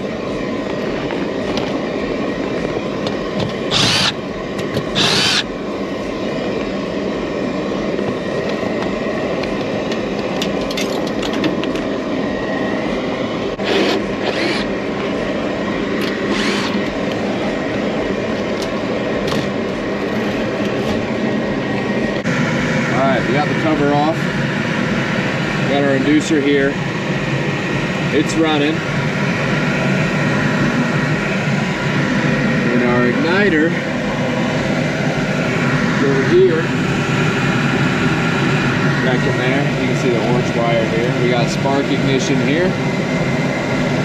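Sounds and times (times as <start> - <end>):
fan motor running steadily: 0.0 - 44.0
cordless driver bursts: 3.7 - 4.2, 4.9 - 5.5, 13.6 - 14.7, 16.0 - 16.8.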